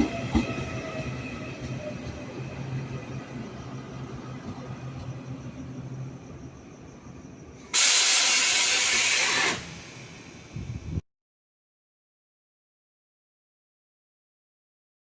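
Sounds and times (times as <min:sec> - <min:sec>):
electric train humming: 0:00.0 - 0:11.0
compressed air hissing: 0:07.6 - 0:10.7.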